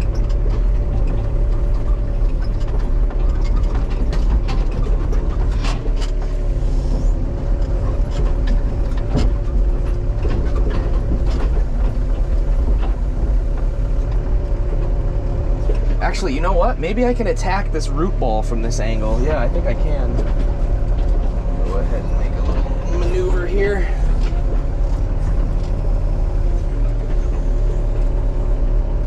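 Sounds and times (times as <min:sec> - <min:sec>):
excavator engine and hydraulics drone: 0:00.0 - 0:29.0.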